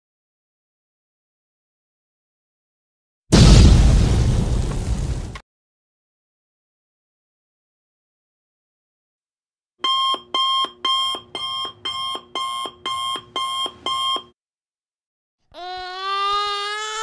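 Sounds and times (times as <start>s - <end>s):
alarm clock beeping: 9.8s - 14.3s
wailing cry: 15.5s - 17.0s.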